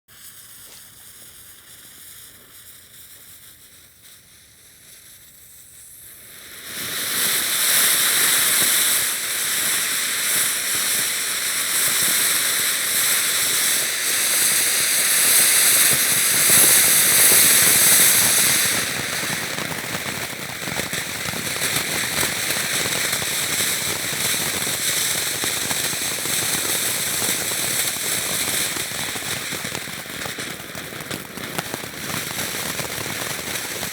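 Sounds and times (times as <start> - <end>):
fireworks fountains crackling hiss: 0.1 - 33.9.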